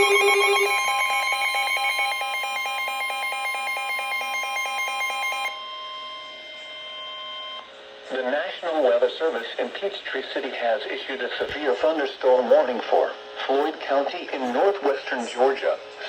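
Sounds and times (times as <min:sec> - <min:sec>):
steady high alert tone: 0:00.0 - 0:04.8
rapidly pulsing alarm tone: 0:00.0 - 0:07.6.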